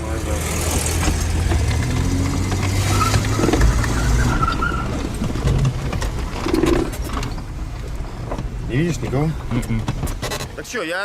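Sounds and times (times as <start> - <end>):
car engine and road drone: 0.0 - 10.9
small knocks and creaks: 5.0 - 10.6.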